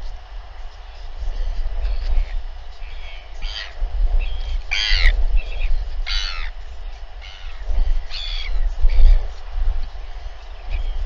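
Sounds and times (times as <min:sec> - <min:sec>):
steady low rumble: 0:00.0 - 0:11.0
birds giving short harsh calls: 0:03.0 - 0:06.5.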